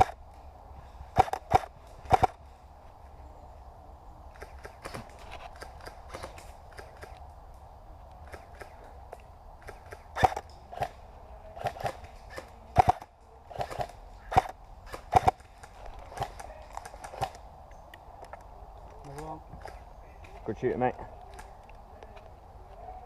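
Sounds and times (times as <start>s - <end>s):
airsoft gun shots: 11.6s - 15.4s.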